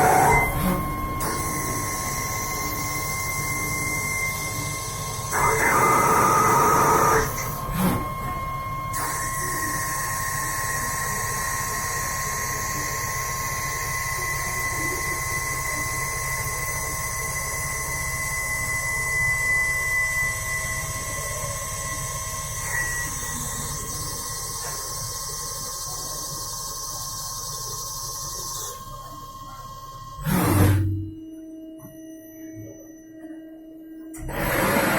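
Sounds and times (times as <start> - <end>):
milling machine high whine: 0.0 - 34.9
metal cutting noise: 30.2 - 31.1, 34.2 - 34.9.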